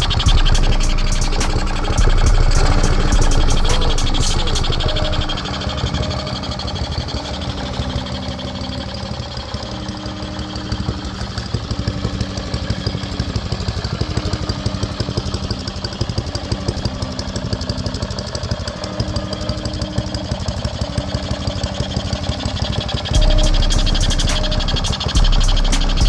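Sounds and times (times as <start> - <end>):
low rumble: 0.0 - 6.9
mini bike engine running: 0.0 - 26.0.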